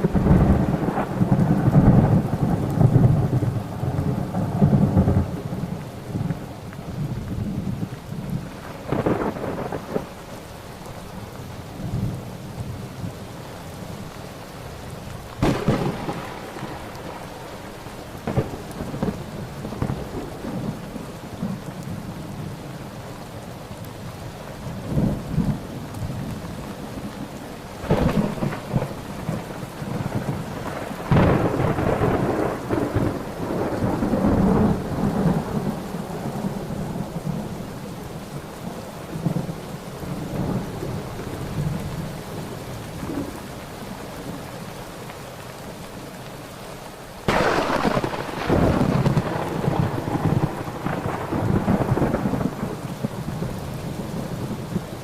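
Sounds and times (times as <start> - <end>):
thunder cracks and rolling peals: 0.0 - 10.2, 15.4 - 21.6, 27.8 - 37.5, 47.3 - 55.0
steady rain: 0.0 - 55.0.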